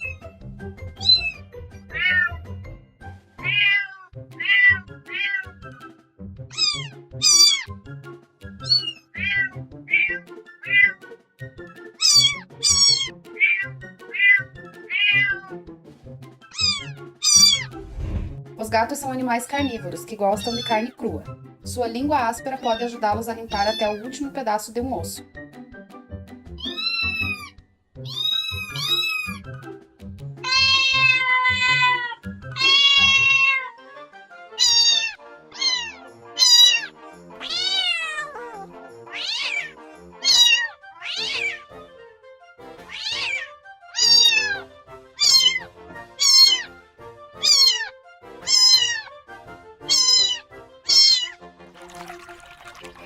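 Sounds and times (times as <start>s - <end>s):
background music with soft beat: 0.0s - 53.0s
cat meowing: 1.0s - 2.4s, 3.4s - 5.6s, 6.5s - 7.7s, 8.6s - 11.0s, 12.0s - 15.6s, 16.5s - 17.8s, 20.4s - 20.8s, 26.6s - 29.4s, 30.4s - 33.8s, 34.6s - 41.6s, 42.8s - 46.8s, 47.4s - 49.2s, 49.8s - 51.4s.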